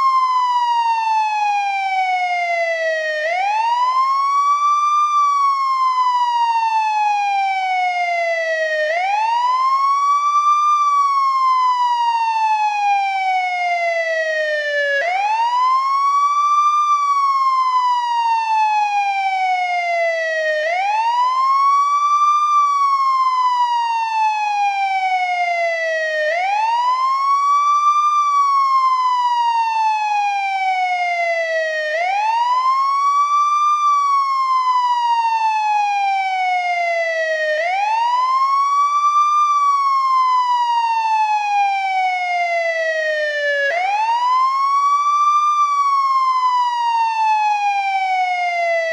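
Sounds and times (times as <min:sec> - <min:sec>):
ambulance wail siren: 0:00.0 - 0:48.9.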